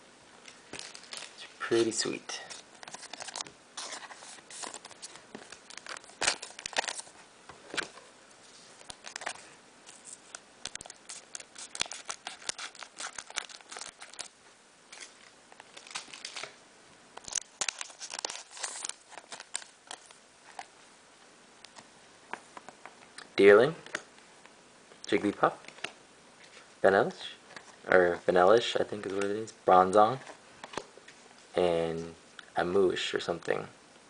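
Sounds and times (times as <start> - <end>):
trading cards being handled: 0.5 - 14.3, 14.9 - 16.6, 17.2 - 20.7
foil wrapper crinkling: 0.8 - 7.2, 8.8 - 16.6, 17.2 - 20.7.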